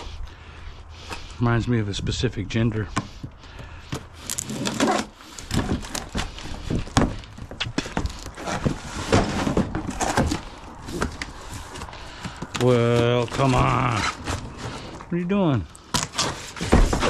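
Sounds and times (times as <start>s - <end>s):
hard objects clattering: 3.5s - 15.1s.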